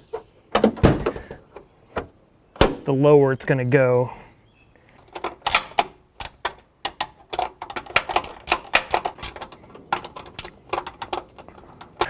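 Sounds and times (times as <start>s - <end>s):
metallic clicks and taps: 4.9s - 12.0s.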